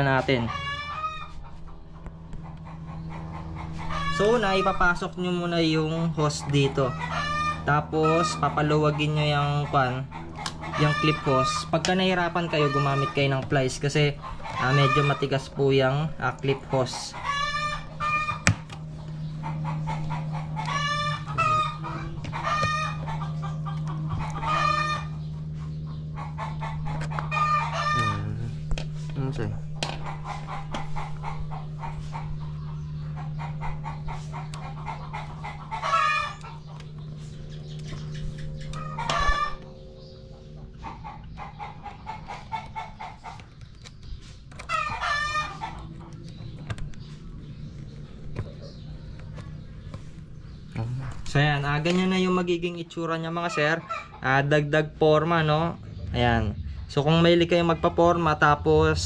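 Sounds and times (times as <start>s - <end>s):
rooster crowing: 0.0s - 1.4s, 6.3s - 9.1s, 10.2s - 13.4s, 17.0s - 18.7s, 19.4s - 28.4s, 33.4s - 36.9s, 37.5s - 43.1s, 44.7s - 46.1s
chickens clucking: 0.0s - 59.0s
steady low hum: 0.0s - 59.0s.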